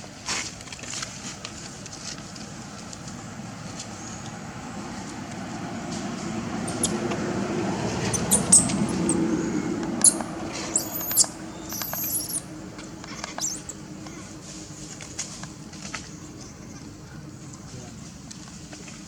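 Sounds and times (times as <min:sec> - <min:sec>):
baby monkey squeaking: 0:06.6 - 0:07.1, 0:08.0 - 0:09.3, 0:10.0 - 0:12.5, 0:13.1 - 0:13.8
sharp clicks: 0:06.7 - 0:07.2, 0:10.0 - 0:12.4.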